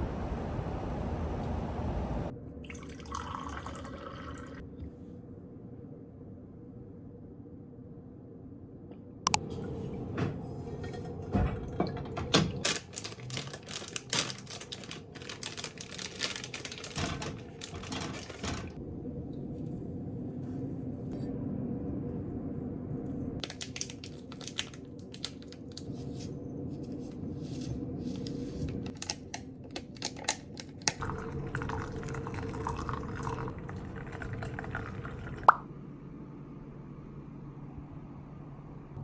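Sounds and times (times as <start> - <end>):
liquid pouring: 2.6 - 4.6, 31.0 - 35.6.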